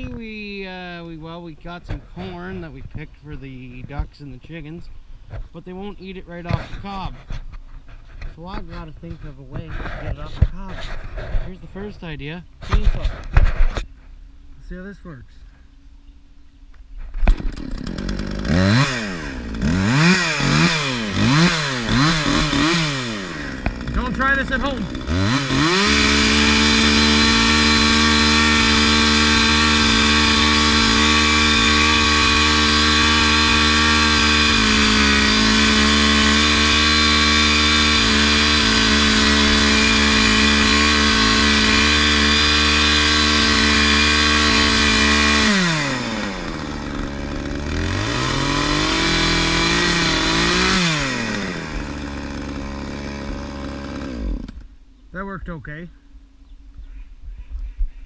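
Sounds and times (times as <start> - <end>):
chainsaw revving and idling: 17.2 - 54.8.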